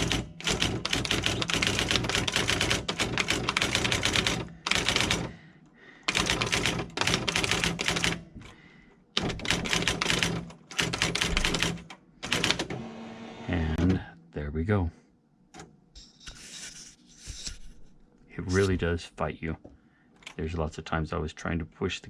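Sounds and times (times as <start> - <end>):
electronic typewriter printing: 0.0 - 5.4, 6.1 - 8.2, 9.2 - 13.1.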